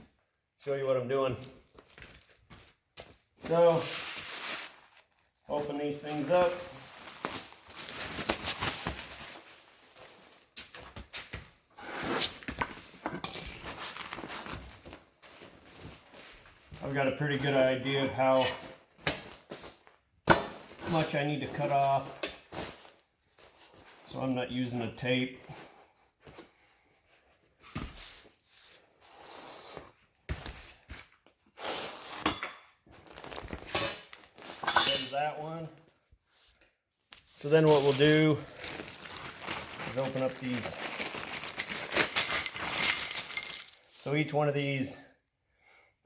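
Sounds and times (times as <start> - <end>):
packaging crinkling: 4.1 - 10.6, 37.4 - 43.9.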